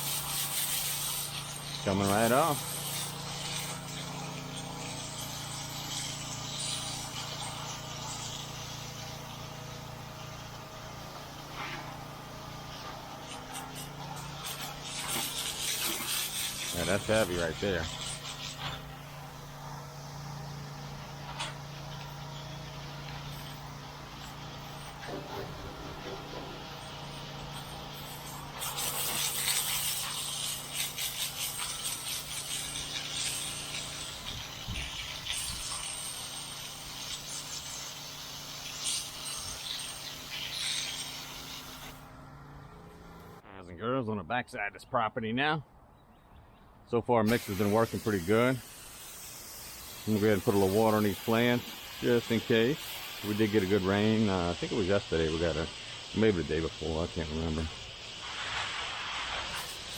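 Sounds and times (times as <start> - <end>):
spray hissing from hose: 0.0 - 42.1, 47.3 - 59.9
engine running steadily: 1.3 - 43.4.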